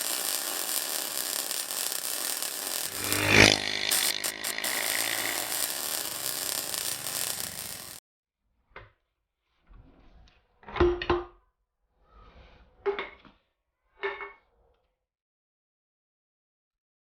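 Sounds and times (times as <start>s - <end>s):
heavy hiss: 0.0s - 8.0s
small engine running: 0.0s - 8.0s.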